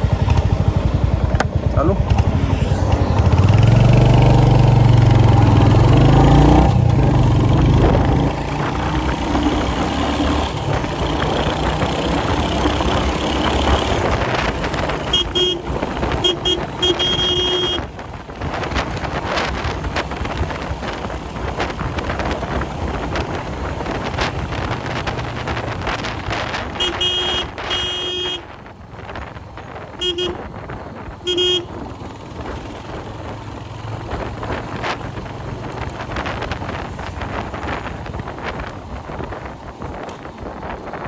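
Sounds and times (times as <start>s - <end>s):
motorcycle engine running: 0.0s - 41.0s
wind noise on microphone: 0.0s - 41.0s
horn tooting: 14.9s - 18.0s, 26.7s - 28.6s, 30.0s - 30.6s, 31.2s - 31.8s.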